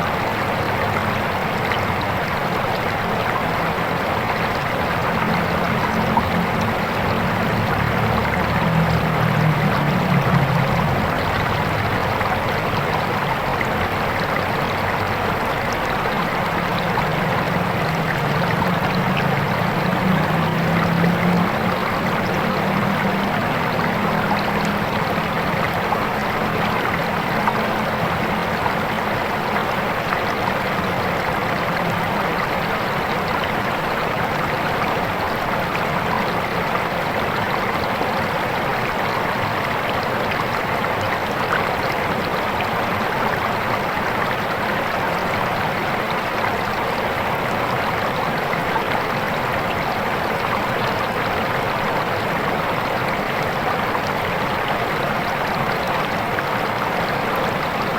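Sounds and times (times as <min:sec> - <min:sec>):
river rushing over rocks: 0:00.0 - 0:57.9.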